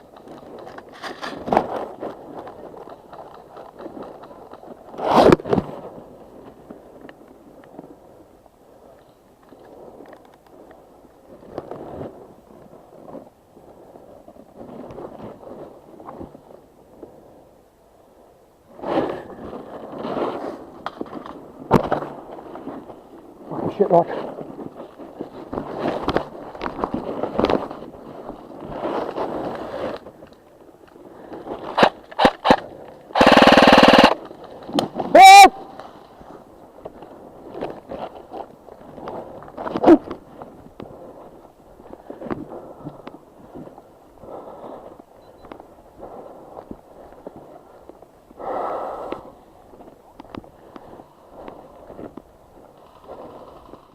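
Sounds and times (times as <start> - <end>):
full-auto airsoft burst: 31.8 - 32.6, 33.2 - 34.2
sharp clicks: 33.2 - 34.2
person breathing heavily: 41.9 - 43.5, 44.1 - 45.1, 45.9 - 49.5.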